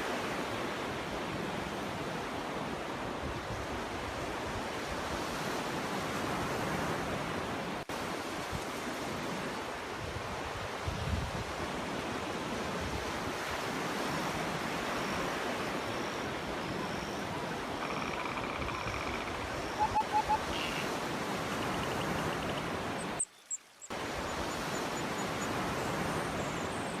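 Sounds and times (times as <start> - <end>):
bird calls: 16.2 - 25.6.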